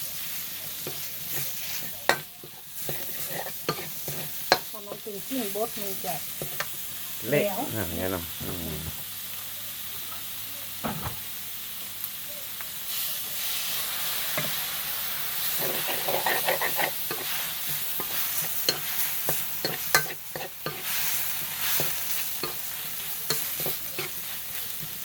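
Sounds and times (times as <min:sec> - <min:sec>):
meat sizzling in a wok: 0:00.0 - 0:25.0
spatula scraping and tapping pan: 0:00.8 - 0:05.1, 0:06.4 - 0:06.7, 0:14.3 - 0:14.6, 0:15.6 - 0:24.9.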